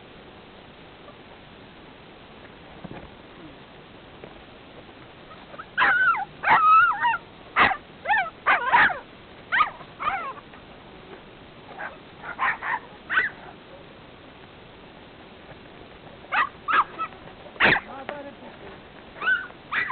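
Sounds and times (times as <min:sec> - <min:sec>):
low steady hiss: 0:00.0 - 0:19.9
high animal calls: 0:05.3 - 0:10.4, 0:19.2 - 0:19.9.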